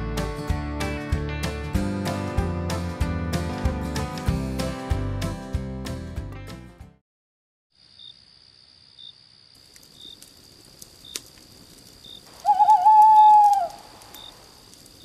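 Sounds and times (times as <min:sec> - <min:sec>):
crickets chirping: 0:07.7 - 0:15.0
owl hooting: 0:12.4 - 0:14.3.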